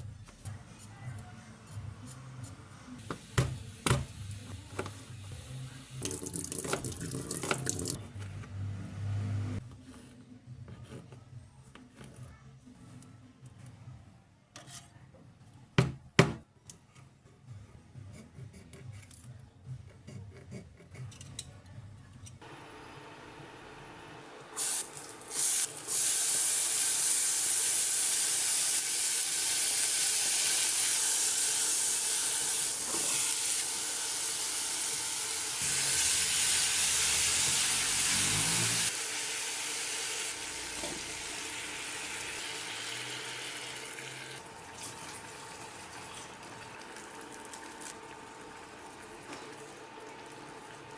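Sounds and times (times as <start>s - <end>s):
food frying in hot oil: 24.6s - 50.9s.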